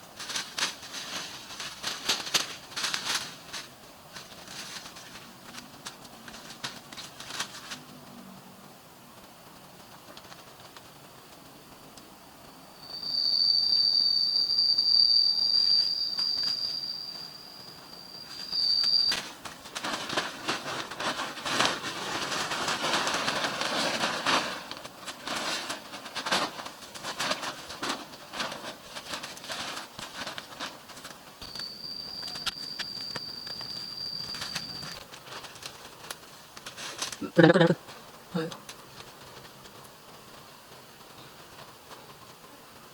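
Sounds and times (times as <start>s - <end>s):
cicada calling: 12.5s - 19.4s, 31.4s - 35.0s.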